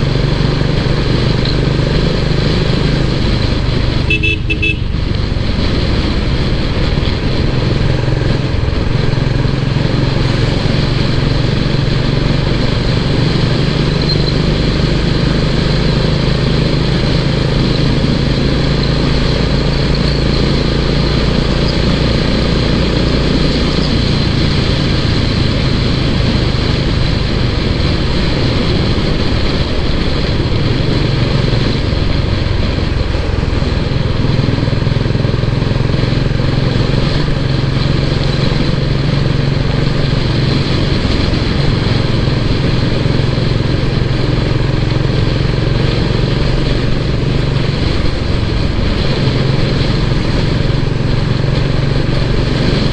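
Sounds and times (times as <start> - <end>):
wind and road noise: 0.0 - 52.9
motorcycle engine thumping: 3.6 - 10.5.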